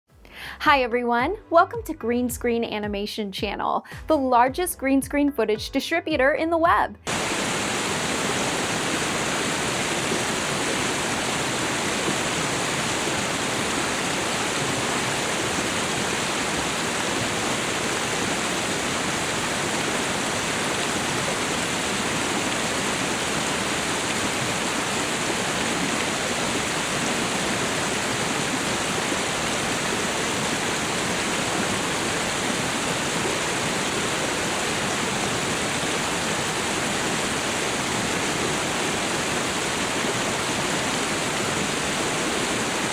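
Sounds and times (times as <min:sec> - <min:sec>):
river water rushing: 0:07.1 - 0:42.9.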